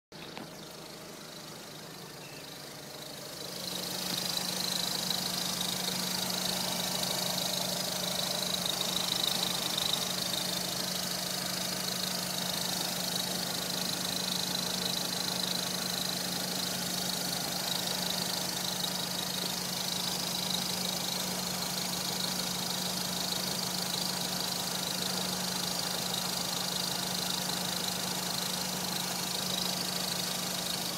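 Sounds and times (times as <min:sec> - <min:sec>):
car engine idling: 0:00.1 - 0:30.9.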